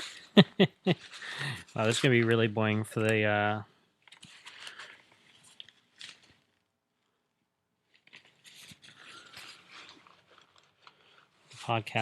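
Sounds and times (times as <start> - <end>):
hands scraping and clicking plastic parts: 7.9 - 12.0.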